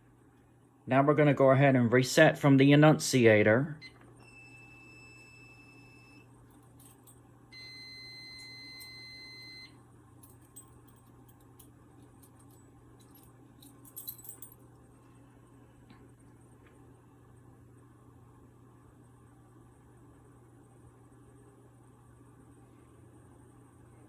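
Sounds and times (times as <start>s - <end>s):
fire alarm panel beep: 3.8s - 6.3s, 7.5s - 9.8s
keys jingling: 6.6s - 7.2s, 10.2s - 14.7s.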